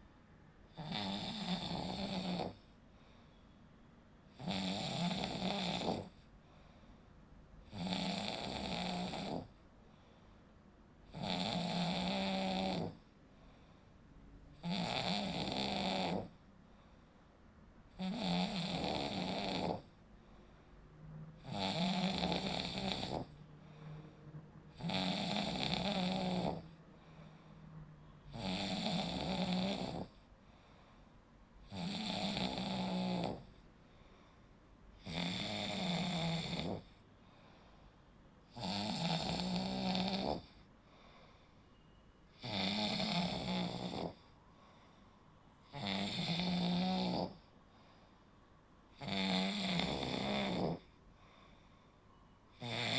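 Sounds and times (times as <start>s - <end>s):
person snoring: 0.7s - 2.6s, 4.3s - 6.2s, 7.6s - 9.6s, 11.1s - 13.0s, 14.5s - 16.4s, 17.9s - 20.0s, 21.4s - 30.3s, 31.6s - 33.6s, 35.0s - 37.0s, 38.5s - 40.6s, 42.4s - 44.2s, 45.7s - 47.5s, 49.0s - 50.9s, 52.6s - 52.9s.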